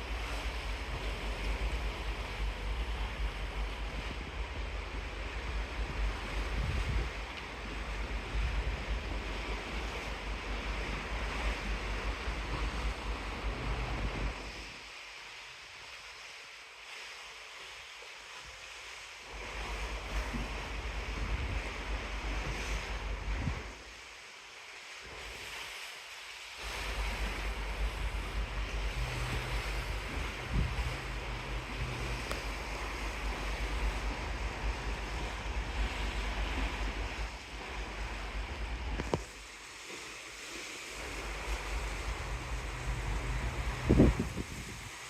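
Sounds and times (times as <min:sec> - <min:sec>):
wind buffeting microphone: 0:00.0 - 0:14.7, 0:19.5 - 0:23.8, 0:26.6 - 0:39.3, 0:41.0 - 0:45.0
open sea rushing: 0:00.0 - 0:45.0.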